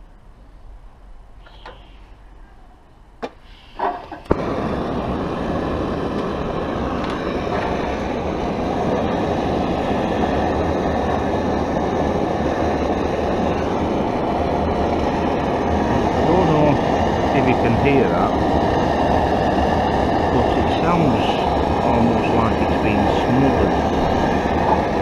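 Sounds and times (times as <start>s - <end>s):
gas burner lighting pop: 3.2s - 11.3s
gas burner roaring: 3.2s - 25.0s
igniter clicks: 6.0s - 8.8s.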